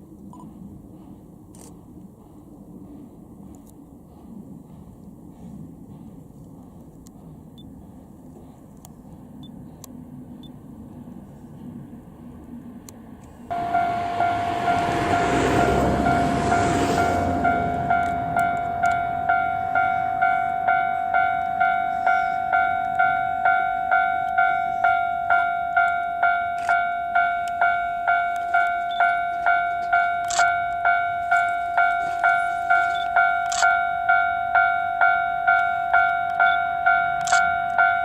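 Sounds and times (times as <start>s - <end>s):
level-crossing warning bell dinging: 13.5s - 38.0s.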